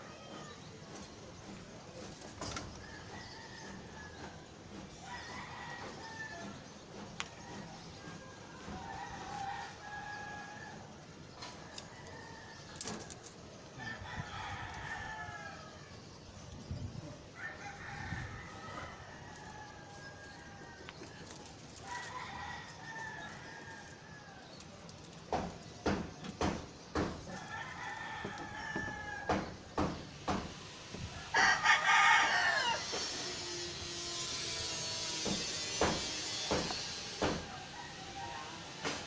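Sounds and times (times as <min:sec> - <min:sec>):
roosters crowing: 0:00.0 - 0:16.5, 0:17.1 - 0:39.0
sharp knocks: 0:25.3 - 0:27.4, 0:28.7 - 0:30.6, 0:35.2 - 0:37.5
steady hiss: 0:29.4 - 0:39.0.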